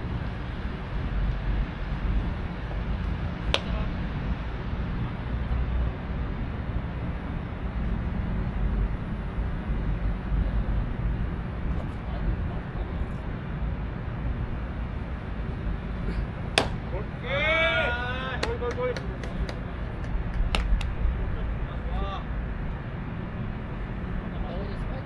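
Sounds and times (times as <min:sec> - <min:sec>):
sharp crack: 0:03.5 - 0:04.0, 0:16.4 - 0:17.4.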